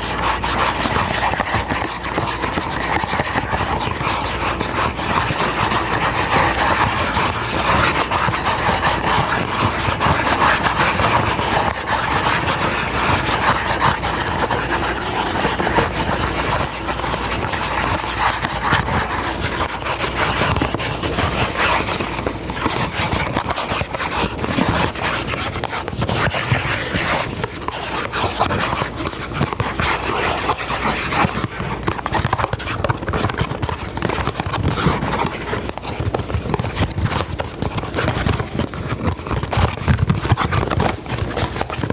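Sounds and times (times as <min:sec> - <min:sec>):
scratching on microphone: 0:00.0 - 0:41.9.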